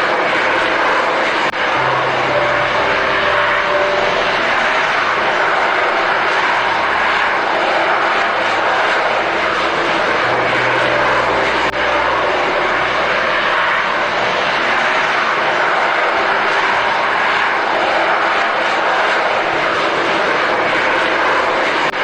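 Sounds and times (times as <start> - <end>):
jet engines roaring: 0.0 - 22.0.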